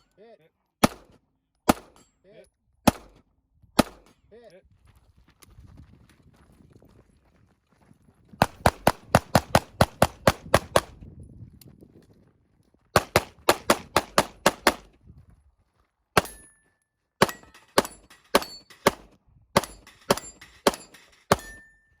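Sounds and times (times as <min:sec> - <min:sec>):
rifle shots: 0:00.8 - 0:02.0, 0:02.9 - 0:03.2, 0:03.8 - 0:04.1, 0:08.4 - 0:11.0, 0:13.0 - 0:14.9, 0:17.2 - 0:21.6
metallic ring of steel targets: 0:01.7 - 0:03.2, 0:16.2 - 0:22.0.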